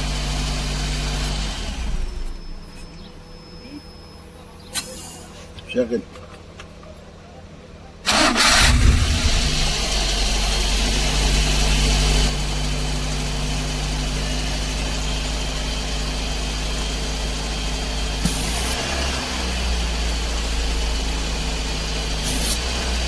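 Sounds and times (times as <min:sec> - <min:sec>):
engine cranking and starting: 0:08.0 - 0:12.4
engine fast idle: 0:08.0 - 0:23.0.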